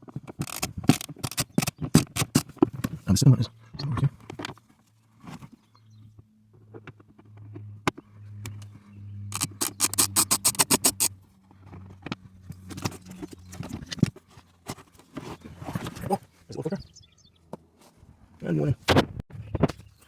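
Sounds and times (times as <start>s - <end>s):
ratchet wrench clicking: 9.3s - 11.2s.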